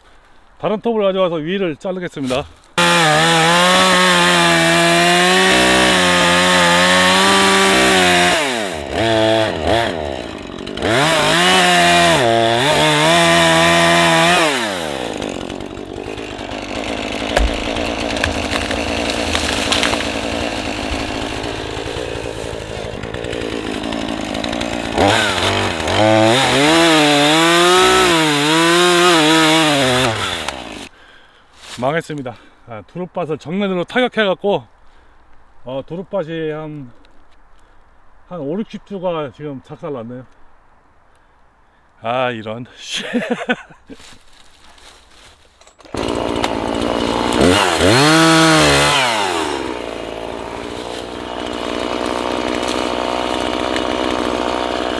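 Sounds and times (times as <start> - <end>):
chainsaw revving and cutting wood: 2.2 - 30.9, 44.1 - 54.9.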